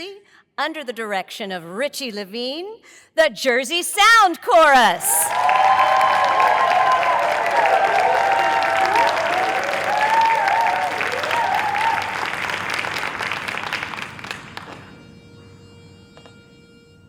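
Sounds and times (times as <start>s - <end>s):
whoops and shouts: 5.0s - 12.2s
audience applauding: 5.0s - 14.9s.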